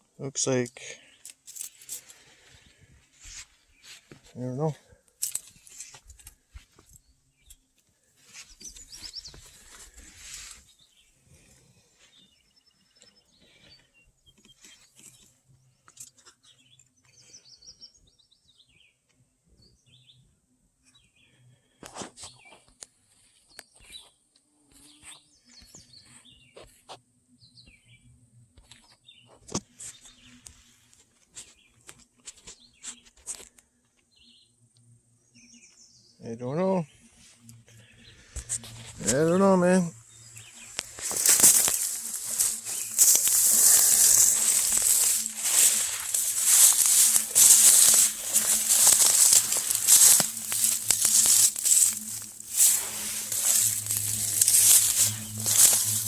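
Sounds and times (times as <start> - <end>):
wild birds chirping: 35.2 - 56.0
rustling rush: 40.6 - 56.0.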